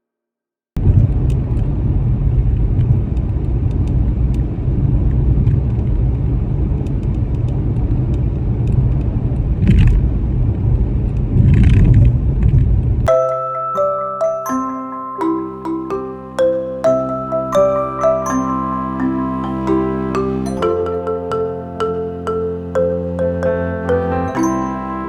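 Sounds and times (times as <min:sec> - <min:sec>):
glockenspiel-like music: 0:13.1 - 0:25.0.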